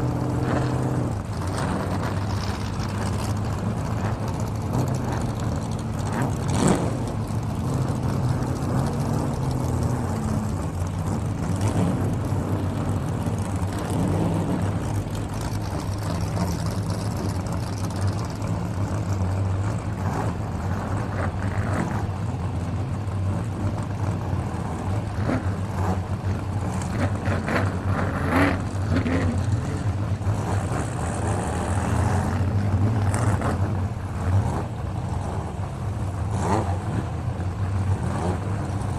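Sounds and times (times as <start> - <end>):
car engines humming: 0.0 - 38.9.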